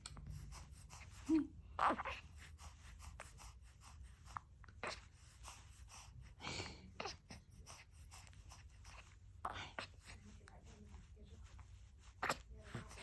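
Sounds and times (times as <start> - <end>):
baby vocal noises: 1.0 - 2.5, 4.7 - 5.2, 6.9 - 10.2, 12.2 - 13.0
soft rustling: 7.2 - 13.0.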